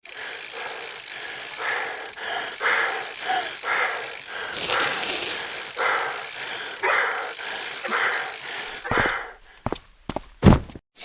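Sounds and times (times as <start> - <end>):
heavy breathing: 0.4 - 9.8
wind and road noise: 10.4 - 10.8.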